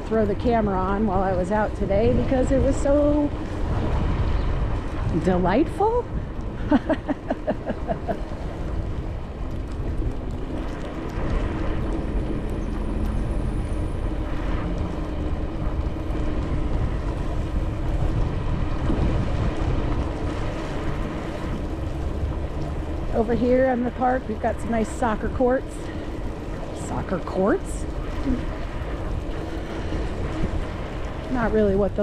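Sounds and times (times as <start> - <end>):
wind rumbling on microphone: 0.0 - 32.0.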